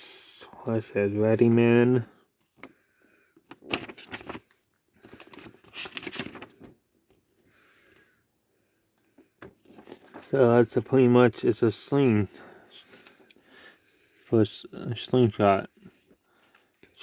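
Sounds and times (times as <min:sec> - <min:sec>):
faint hiss: 0:00.0 - 0:00.8
packaging clicks and rustling: 0:03.4 - 0:06.8, 0:09.4 - 0:10.4.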